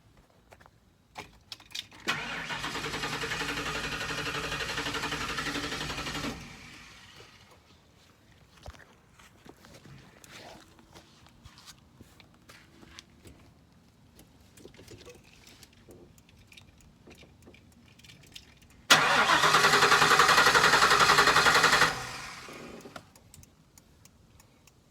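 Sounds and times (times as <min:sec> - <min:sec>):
engine cranking by starter: 0:02.0 - 0:07.5, 0:18.9 - 0:23.2.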